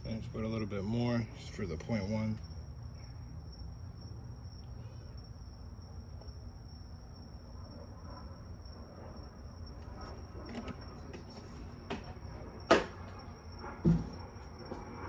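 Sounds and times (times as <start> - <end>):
high insect chirr: 0.0 - 15.0.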